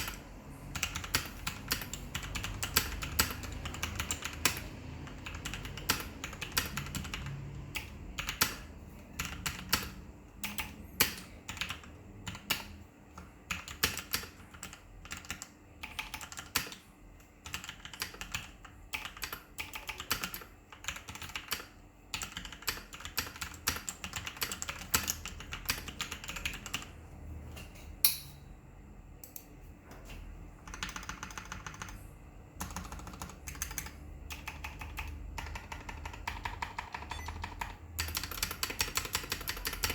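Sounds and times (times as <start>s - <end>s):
mechanical keyboard typing: 0.0s - 27.0s, 30.6s - 32.0s, 32.6s - 39.9s.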